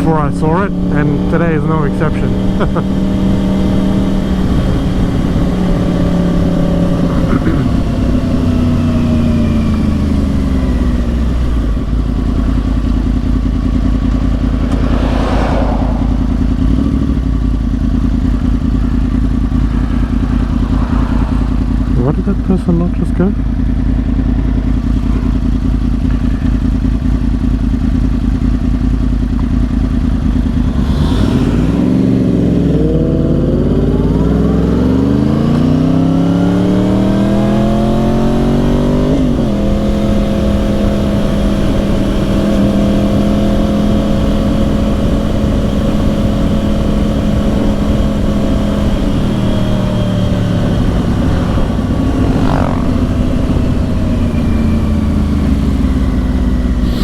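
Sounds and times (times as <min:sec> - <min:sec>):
motorcycle engine revving: 0:00.0 - 0:57.0
road and wind noise: 0:00.0 - 0:57.0.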